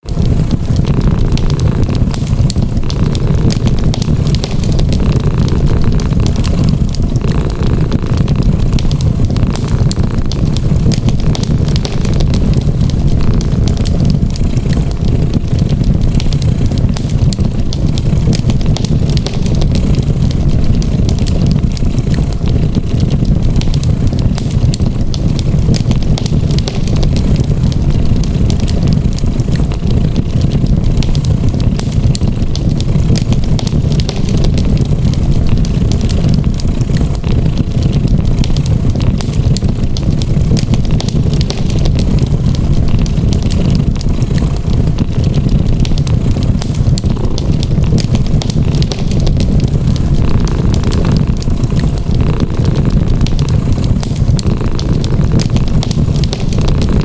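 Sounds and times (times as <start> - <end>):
wood fire crackling: 0.0 - 57.0
cat purring: 0.4 - 57.0.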